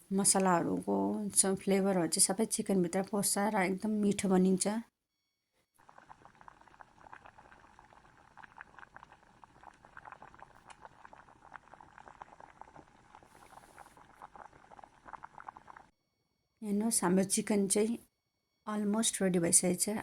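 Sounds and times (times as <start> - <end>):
gravy bubbles popping: 5.8 - 15.9.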